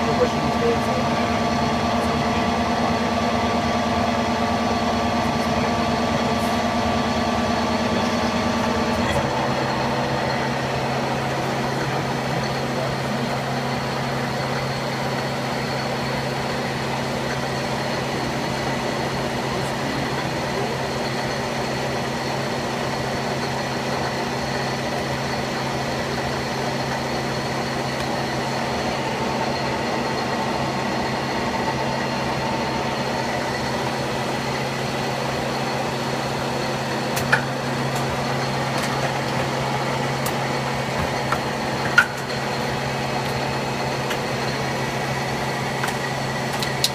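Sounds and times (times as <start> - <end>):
machine hum with high whine: 0.0 - 46.9.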